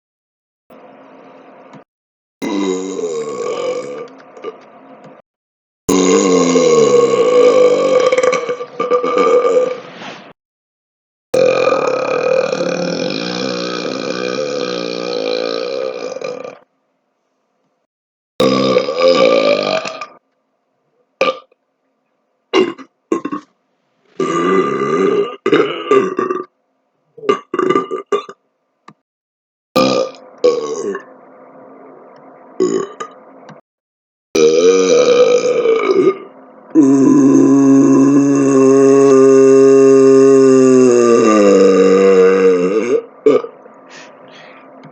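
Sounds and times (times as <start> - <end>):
man burping deeply: 2.4 - 4.1, 5.9 - 9.8, 11.4 - 16.6, 18.4 - 20.2, 22.6 - 23.5, 24.2 - 26.5, 27.2 - 28.4, 29.8 - 31.0, 34.4 - 43.6.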